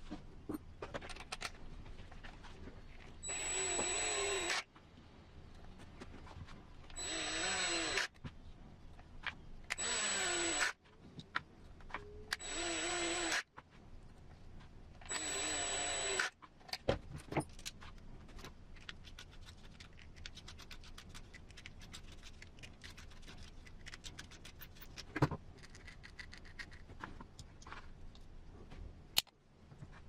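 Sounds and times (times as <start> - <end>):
machine whir: 3.2 - 4.6, 12.3 - 13.4, 15.1 - 16.3
plastic parts clicking: 16.2 - 27.7.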